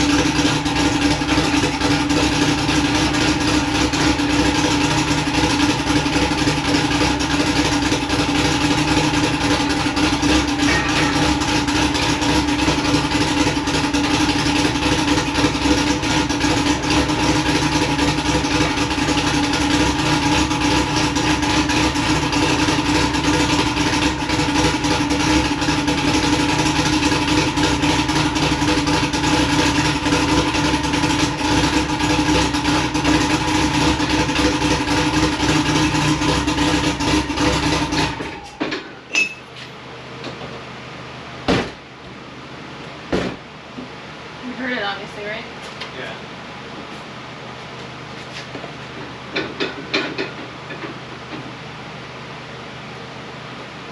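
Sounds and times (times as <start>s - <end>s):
turbocharged engine running: 0.0s - 53.9s
knock: 43.1s - 43.4s.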